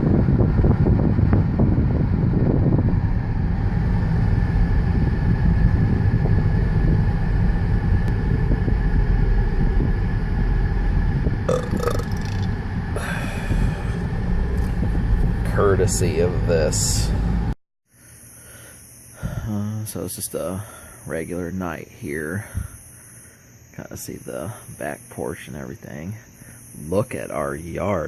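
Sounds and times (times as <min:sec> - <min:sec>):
steady low rumble: 0:00.0 - 0:17.6
loud belch: 0:11.5 - 0:13.1.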